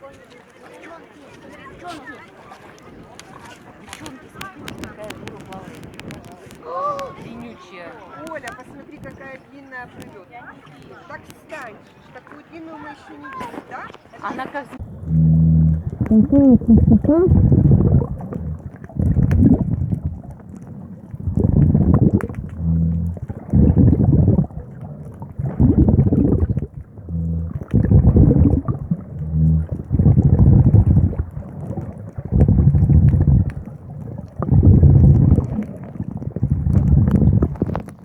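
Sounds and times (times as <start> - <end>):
water gurgling: 13.2 - 38.0.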